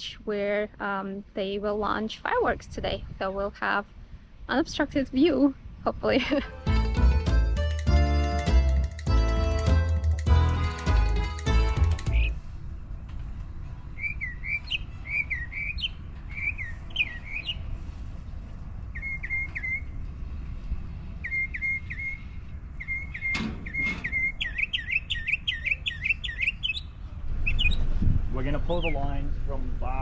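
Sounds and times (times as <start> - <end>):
bird whistled chirps: 19.0 - 19.9
steady low rumble: 27.0 - 30.0.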